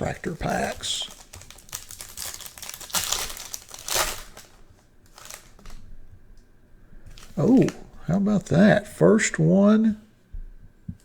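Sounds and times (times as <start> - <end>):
foil wrapper crinkling: 0.0 - 5.9, 7.1 - 8.0.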